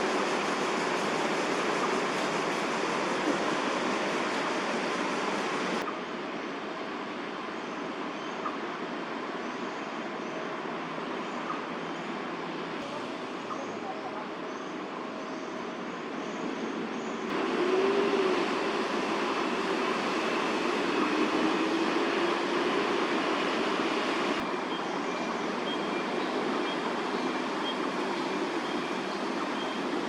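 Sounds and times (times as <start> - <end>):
city traffic noise: 0.0 - 30.0
vehicle engine hum: 17.3 - 30.0.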